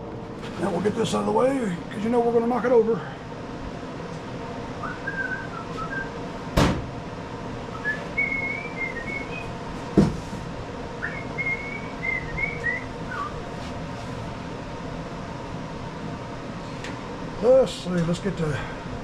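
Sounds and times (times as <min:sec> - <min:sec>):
person whistling a tune: 0:04.8 - 0:06.1, 0:07.8 - 0:09.5, 0:11.0 - 0:13.4.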